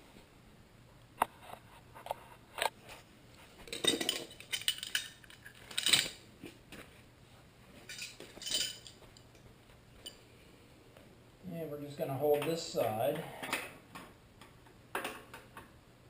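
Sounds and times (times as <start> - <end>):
metal hand tools clinking: 3.7 - 6.2, 7.9 - 9.0.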